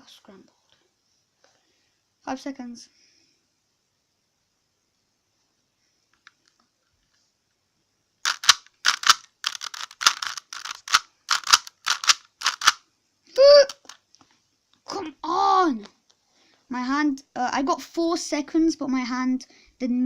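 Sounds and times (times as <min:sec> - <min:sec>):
plastic cube clacking: 0:08.2 - 0:12.8, 0:13.6 - 0:14.0
person speaking: 0:08.3 - 0:14.0.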